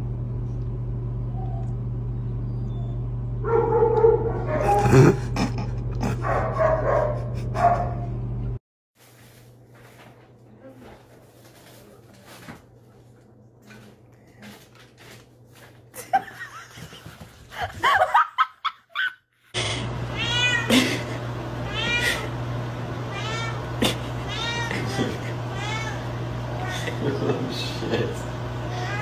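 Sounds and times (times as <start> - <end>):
steady low hum: 0.0 - 8.6
cat meowing: 20.2 - 20.7, 21.7 - 22.3, 23.1 - 26.9, 28.7 - 29.0.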